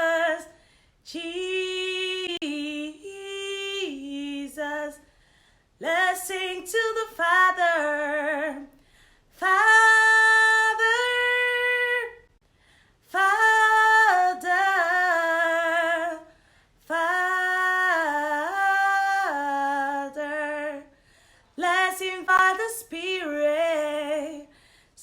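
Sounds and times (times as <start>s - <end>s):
person singing unaccompanied: 0.0s - 0.5s.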